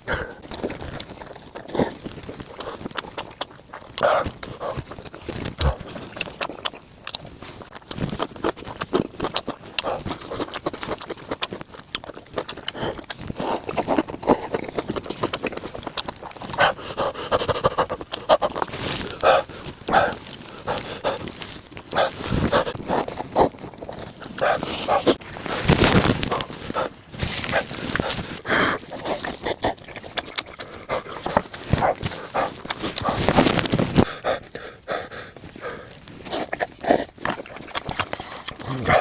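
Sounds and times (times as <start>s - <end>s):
breathy puffs: 0.0s - 2.9s, 4.0s - 6.3s, 16.4s - 39.0s
slurping and chewing noodles: 0.0s - 39.0s
wet mouth clicks: 0.0s - 39.0s.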